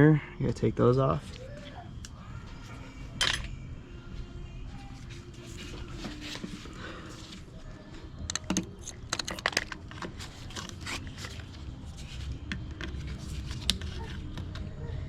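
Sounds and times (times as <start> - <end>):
low steady hum: 0.0 - 15.0
hands clicking and scraping parts: 8.2 - 14.7.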